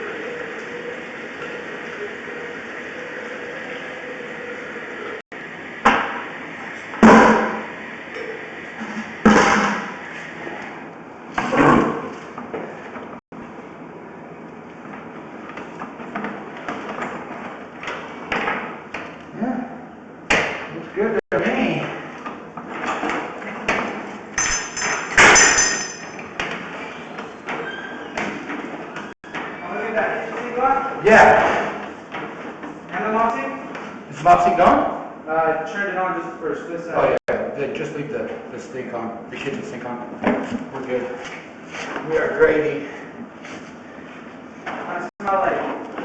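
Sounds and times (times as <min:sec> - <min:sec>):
heavy ringing knocks: 0:24.4 - 0:26.2.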